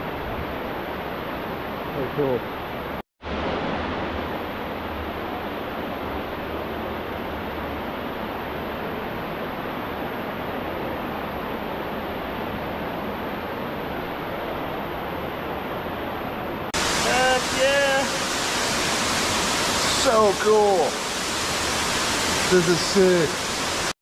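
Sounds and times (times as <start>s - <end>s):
waterfall rushing: 16.8s - 24.0s.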